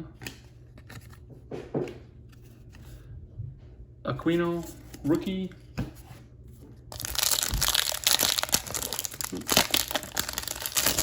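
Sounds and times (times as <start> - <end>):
foil wrapper crinkling: 6.9 - 11.0.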